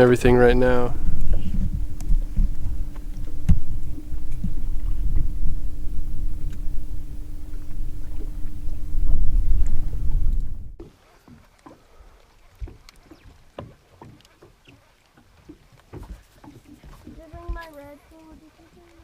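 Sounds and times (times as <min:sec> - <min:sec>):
boat motor rumbling: 0:00.0 - 0:10.8.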